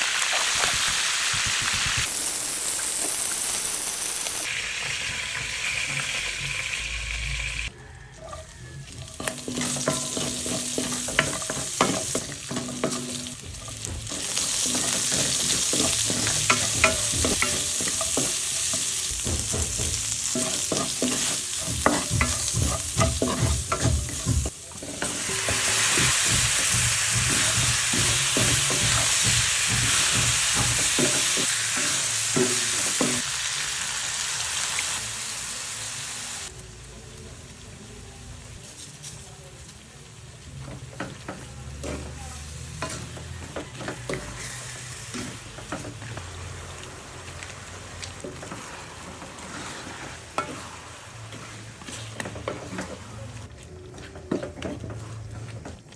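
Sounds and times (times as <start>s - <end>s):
food sizzling in a pan: 0.0s - 53.6s
utensil scraping a pan: 48.4s - 53.0s.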